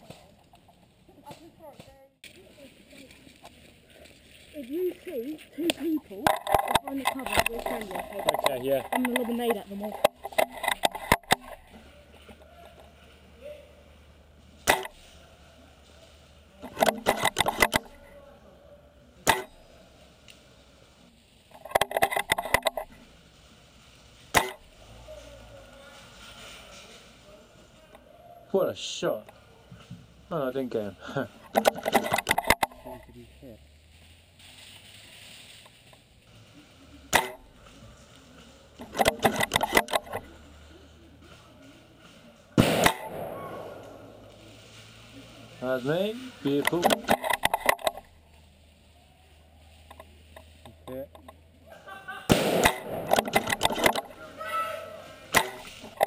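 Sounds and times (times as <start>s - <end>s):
single airsoft gun shots: 42.6s - 43.9s, 52.3s - 53.2s.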